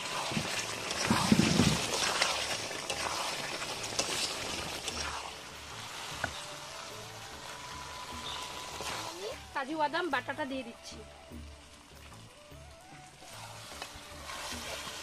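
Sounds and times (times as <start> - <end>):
curry sizzling in a pan: 0.0 - 15.0.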